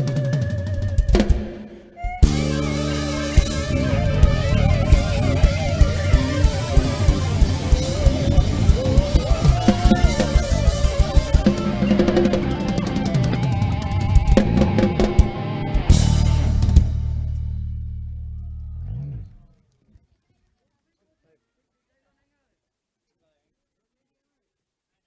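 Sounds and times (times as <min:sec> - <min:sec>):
drum kit beat and rolls: 0:00.0 - 0:18.9
bass and guitar: 0:00.0 - 0:19.5.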